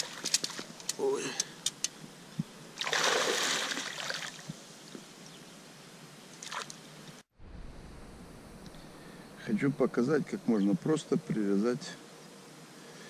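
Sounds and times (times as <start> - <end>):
water splashing and trickling: 0.0 - 1.5, 2.8 - 4.6, 6.4 - 6.8.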